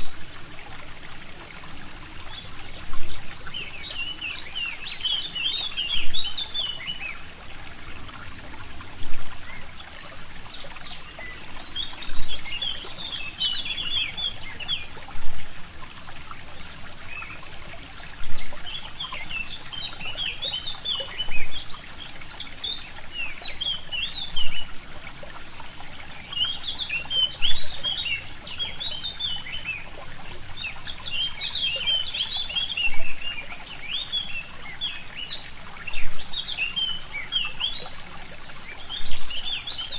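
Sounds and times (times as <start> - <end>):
songbirds twittering: 0.0 - 39.9
stream trickling: 0.0 - 39.9.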